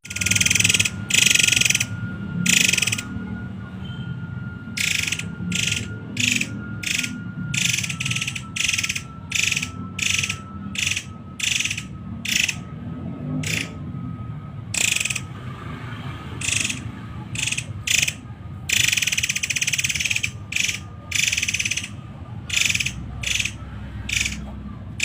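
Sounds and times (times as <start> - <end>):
bird rattling calls: 2.5 - 3.0, 4.8 - 12.6, 13.4 - 13.7, 14.8 - 15.2, 16.4 - 16.8, 17.4 - 24.4.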